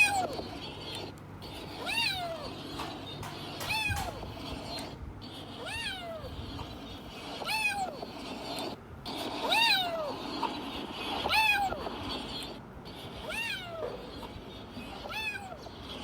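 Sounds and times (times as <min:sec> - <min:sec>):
cat meowing: 0:01.8 - 0:04.2, 0:05.6 - 0:06.3, 0:07.4 - 0:08.0, 0:09.4 - 0:10.1, 0:11.3 - 0:11.8, 0:13.2 - 0:14.1, 0:15.0 - 0:15.7.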